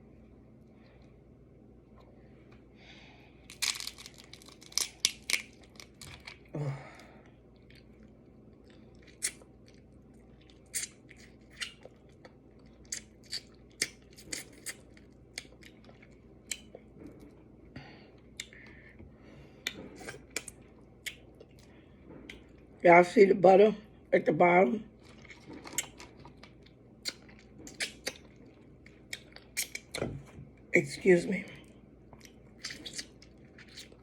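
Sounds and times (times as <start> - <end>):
crunching and chewing: 3.4 - 18.8, 19.6 - 22.7, 24.9 - 30.0, 31.6 - 34.0
mouth clicks and smacks: 27.0 - 28.3.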